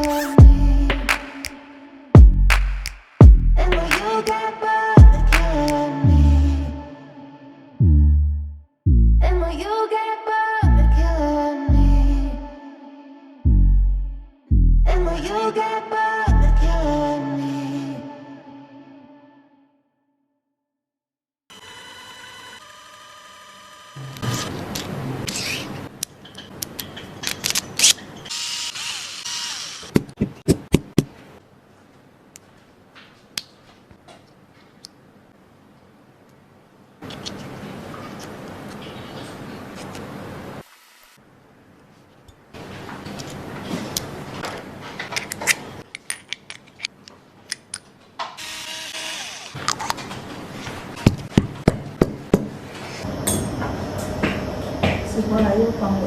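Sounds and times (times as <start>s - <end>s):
clicks of small parts and tools: 43.1s - 48.4s.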